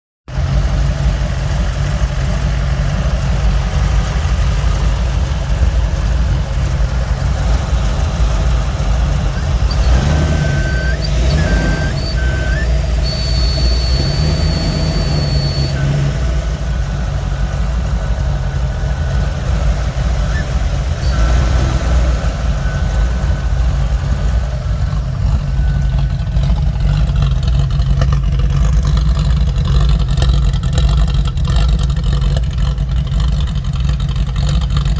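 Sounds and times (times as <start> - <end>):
car engine running: 0.3 - 34.9
high-pitched whistle: 9.4 - 16.2, 20.2 - 21.7.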